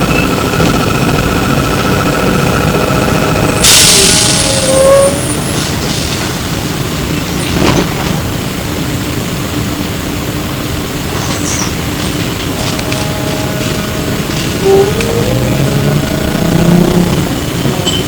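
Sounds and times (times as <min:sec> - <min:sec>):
trolleybus interior rumble: 0:00.0 - 0:18.0
steady low hum: 0:12.3 - 0:17.9.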